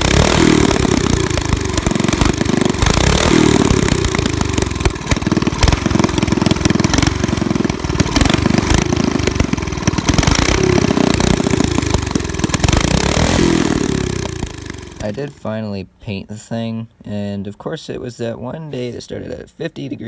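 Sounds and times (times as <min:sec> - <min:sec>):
small motorbike engine revving: 0:00.0 - 0:15.4.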